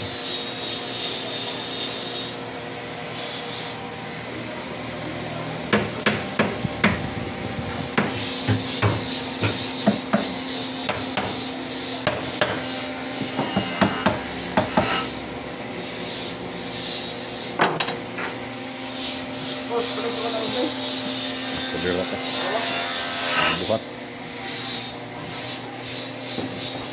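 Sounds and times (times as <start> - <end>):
steady machine hum: 3.8 - 24.2
hammer knocks on wood: 8.0 - 10.3, 13.2 - 15.0.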